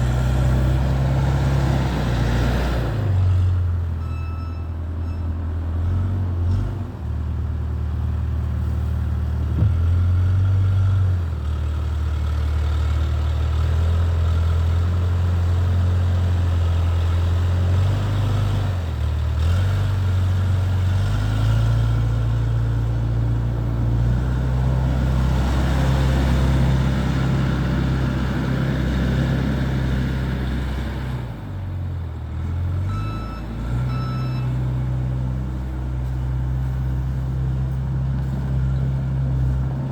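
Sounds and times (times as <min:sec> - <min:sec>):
diesel engine running under load: 0:00.0 - 0:39.9
short beeping tone: 0:04.0 - 0:05.4, 0:32.9 - 0:34.6.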